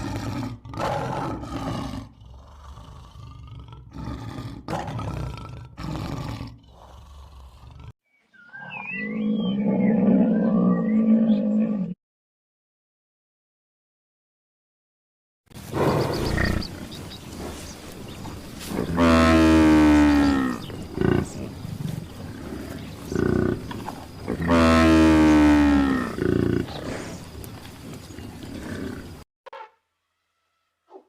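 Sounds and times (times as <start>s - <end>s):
cow grunts: 0.0s - 8.0s, 15.7s - 29.2s
cow mooing: 18.8s - 21.4s, 22.4s - 26.7s.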